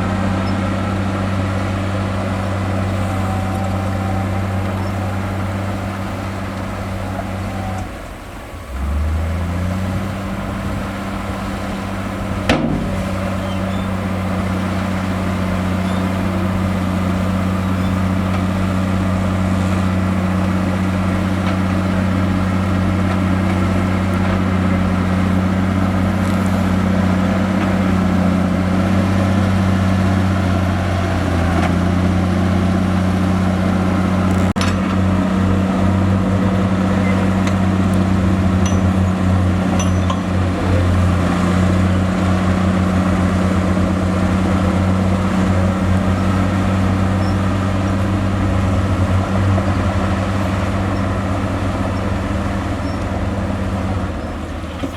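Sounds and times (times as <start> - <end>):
heavy diesel engine droning: 0.0 - 54.9
sharp knock: 12.5 - 13.1.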